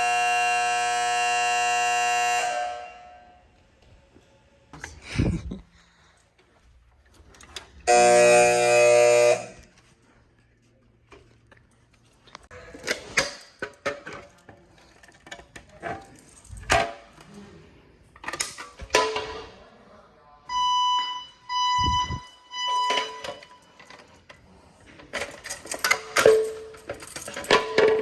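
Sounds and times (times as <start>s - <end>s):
fire alarm beeps: 0.0s - 3.6s, 7.9s - 9.8s, 20.4s - 24.1s.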